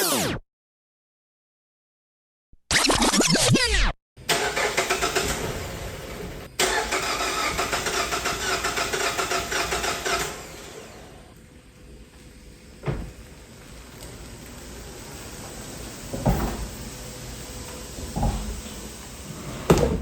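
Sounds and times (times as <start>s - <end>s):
engine starter cranking: 4.2s - 10.8s.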